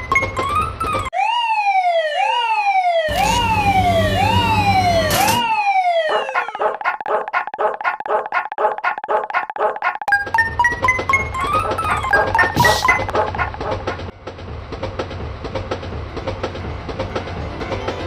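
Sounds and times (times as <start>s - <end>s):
siren-like alarm wail: 0.9s - 6.9s.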